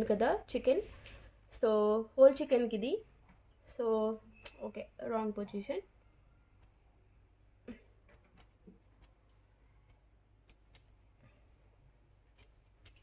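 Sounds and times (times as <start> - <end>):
metal rod clicking and tapping: 8.1 - 11.4, 12.4 - 13.0.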